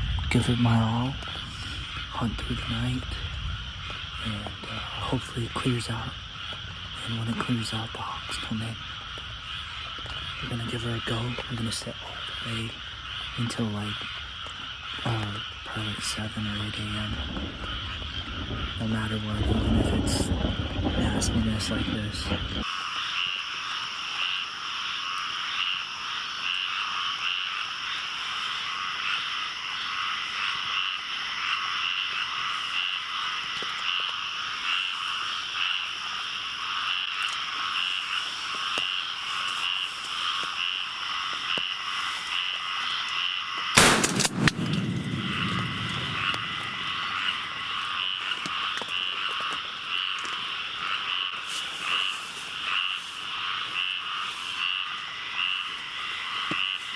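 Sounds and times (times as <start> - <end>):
frogs calling: 0.0 - 56.9
shotgun blast: 43.8 - 47.7.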